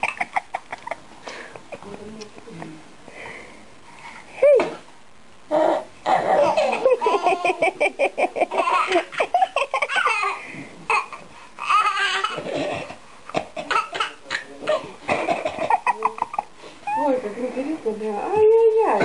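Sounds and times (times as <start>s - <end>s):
baby laughing: 6.3s - 12.6s.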